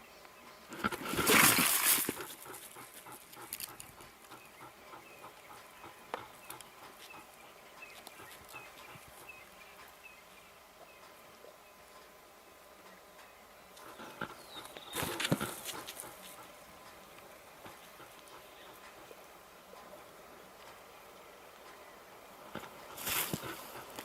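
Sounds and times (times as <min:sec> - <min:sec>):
animal rough noisy call: 0:00.8 - 0:07.6, 0:13.8 - 0:16.7, 0:22.5 - 0:24.0
faint clicks: 0:12.8 - 0:20.0, 0:20.6 - 0:21.9.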